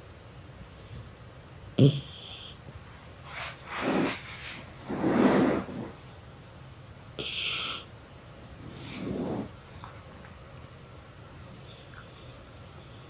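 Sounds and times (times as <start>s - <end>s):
dog snoring: 1.8s - 2.6s, 3.3s - 6.0s, 7.2s - 7.9s, 8.6s - 9.6s.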